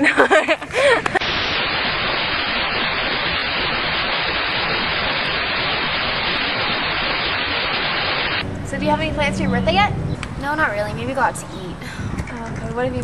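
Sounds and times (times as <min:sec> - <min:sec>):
static hiss: 0:00.8 - 0:08.9.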